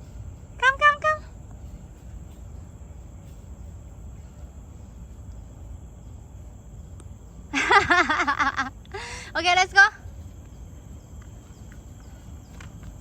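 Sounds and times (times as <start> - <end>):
high insect drone: 0.0 - 13.0
low rumble of wind: 0.0 - 13.0.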